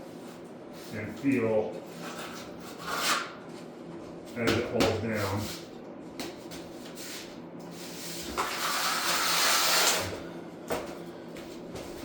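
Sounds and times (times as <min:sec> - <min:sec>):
trowel scraping membrane: 0:07.9 - 0:10.2.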